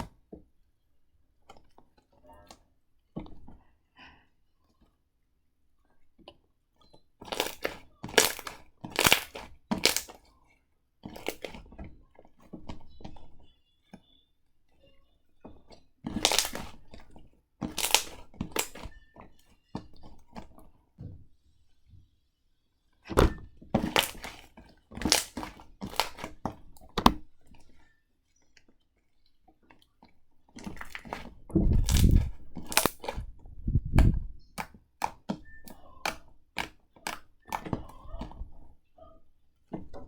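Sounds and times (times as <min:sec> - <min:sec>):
slime squeezed crackling: 0:07.2 - 0:10.2, 0:11.2 - 0:11.6, 0:16.1 - 0:16.8, 0:17.7 - 0:19.0, 0:23.8 - 0:24.4, 0:25.0 - 0:26.4, 0:30.6 - 0:33.3.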